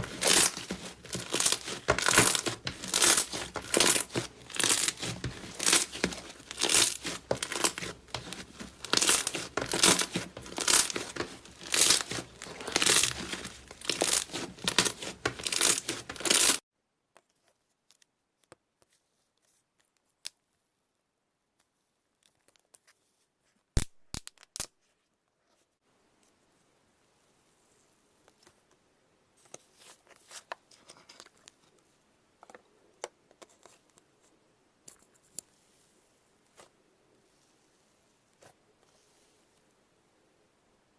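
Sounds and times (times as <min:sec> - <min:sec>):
slime crackling and tearing: 0:00.0 - 0:16.6.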